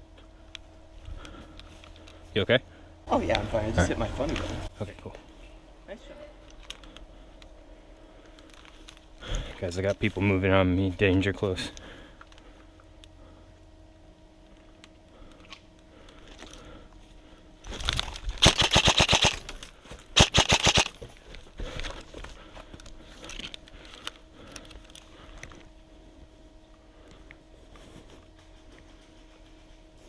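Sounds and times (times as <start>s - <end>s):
airsoft gun full-auto bursts: 18.4s - 19.4s, 20.2s - 21.0s.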